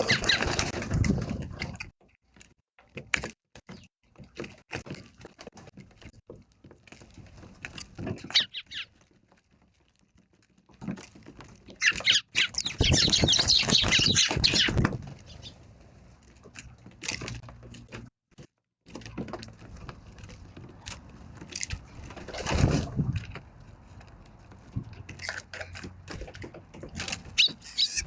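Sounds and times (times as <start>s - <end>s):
sparrows chirping: 0.0s - 0.4s, 8.2s - 8.9s, 11.8s - 15.6s, 27.3s - 28.0s.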